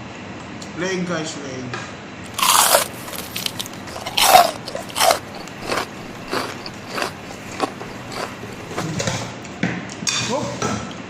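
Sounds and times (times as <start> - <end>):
crunching bites of fried chicken: 2.3 - 9.1.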